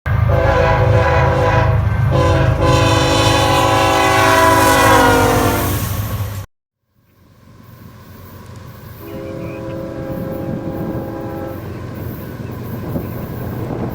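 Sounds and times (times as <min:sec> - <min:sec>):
locomotive air horn blasts: 0:00.1 - 0:06.0, 0:09.0 - 0:11.9
rumble of passing train: 0:00.1 - 0:13.9.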